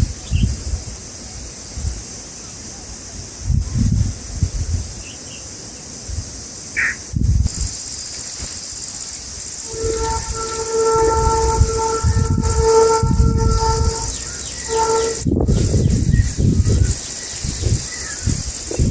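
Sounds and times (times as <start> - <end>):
wind bumps on microphone: 0.0 - 2.2, 3.0 - 5.1, 6.0 - 8.7, 9.6 - 18.9
insect drone: 0.0 - 18.9
bird chirp: 5.0 - 5.9, 6.8 - 7.0, 14.0 - 18.9
multi-note horn: 9.6 - 15.7.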